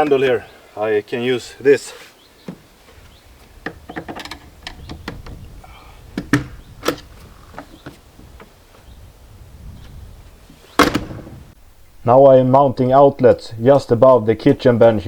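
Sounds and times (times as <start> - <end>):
door latch clicking: 6.2 - 7.7, 10.8 - 11.4.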